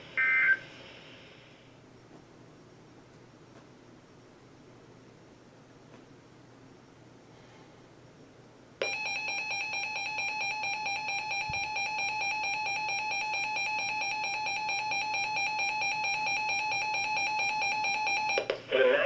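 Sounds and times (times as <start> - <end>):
harsh two-tone alarm: 8.8 - 18.5.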